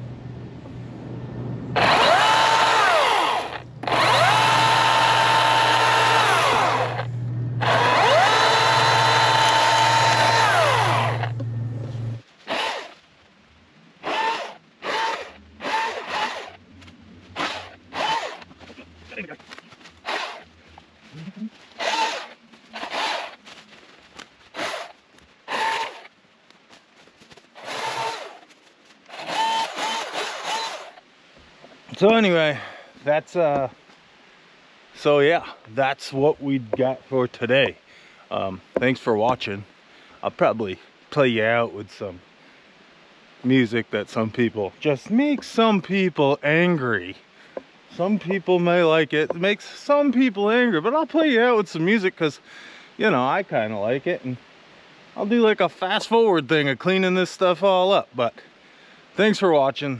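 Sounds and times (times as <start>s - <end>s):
steady low hum: 0.0s - 26.4s
battery chainsaw whine: 1.7s - 13.0s, 14.0s - 16.6s, 17.4s - 18.8s, 20.0s - 20.5s, 21.8s - 23.4s, 24.6s - 24.9s, 25.5s - 26.1s, 27.6s - 28.4s, 29.1s - 31.0s.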